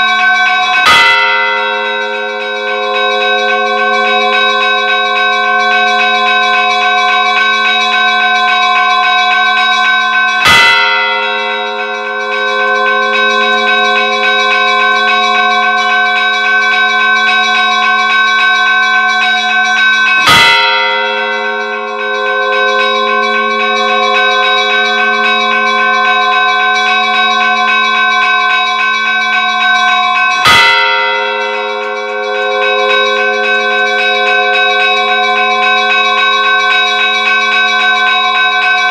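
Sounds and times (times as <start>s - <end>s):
big bell strikes: 0.0s - 38.9s
small church bells ringing: 0.0s - 38.9s.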